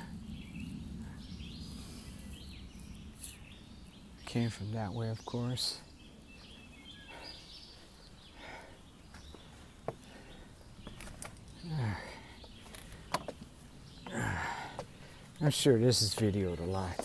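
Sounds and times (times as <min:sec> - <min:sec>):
person breathing: 0:00.9 - 0:02.3, 0:07.0 - 0:10.7, 0:14.1 - 0:15.4
footsteps: 0:09.1 - 0:11.5, 0:15.9 - 0:17.0
person sighing: 0:14.1 - 0:14.8.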